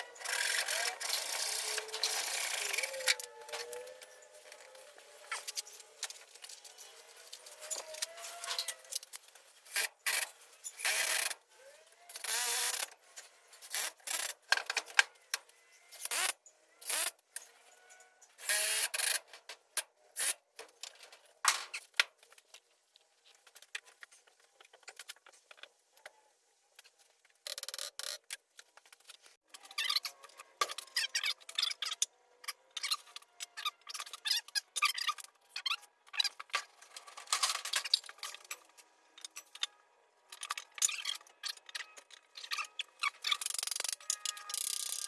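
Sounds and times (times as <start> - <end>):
faint squeaks: 0.0 - 9.8, 17.4 - 18.5
tools clicking and knocking: 40.3 - 45.0.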